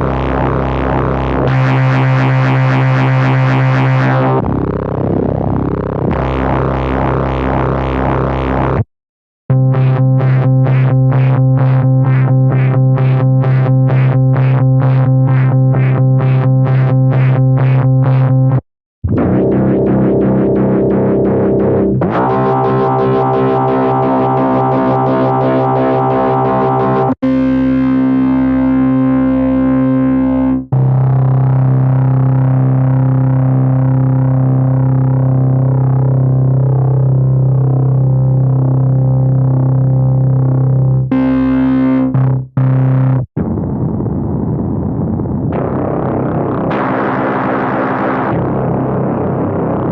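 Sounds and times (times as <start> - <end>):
pulsing low synth note: 9.5 - 49.9
sustained synth tone: 19.1 - 27.9.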